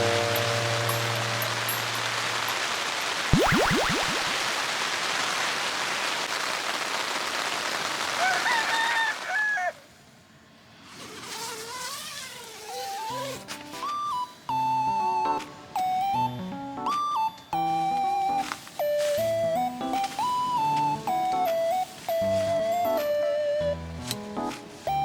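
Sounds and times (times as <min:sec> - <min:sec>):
soft music melody: 0:00.0 - 0:02.6, 0:13.2 - 0:25.0
heavy rain hiss: 0:00.0 - 0:03.4, 0:04.0 - 0:09.4
rooster crowing: 0:08.2 - 0:09.8.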